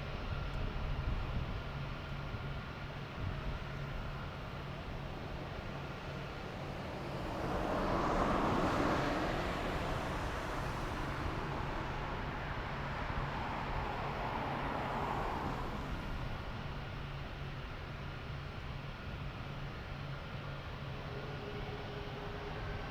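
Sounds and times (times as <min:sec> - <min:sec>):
aircraft jet engines: 0:00.0 - 0:22.9.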